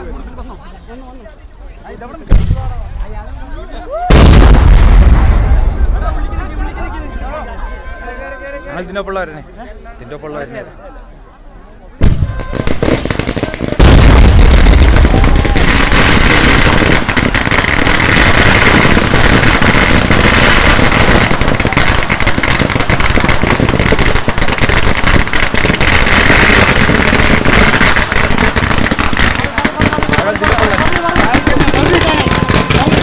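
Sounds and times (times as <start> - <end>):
firecrackers exploding: 2.2 - 7.0, 12.0 - 33.0.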